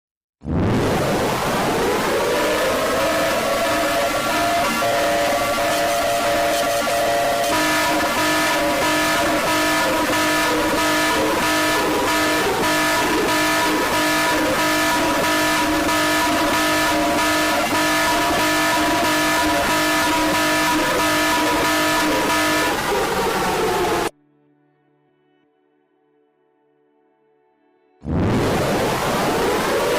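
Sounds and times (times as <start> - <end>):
harsh pulsing alarm: 1.3 - 24.1, 28.8 - 29.9.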